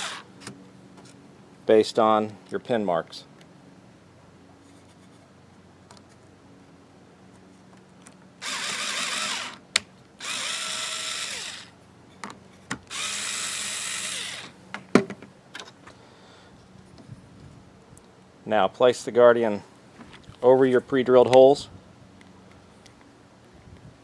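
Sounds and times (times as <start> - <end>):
power drill running: 0.0 - 0.3, 8.4 - 9.6, 10.2 - 11.7, 12.9 - 14.6.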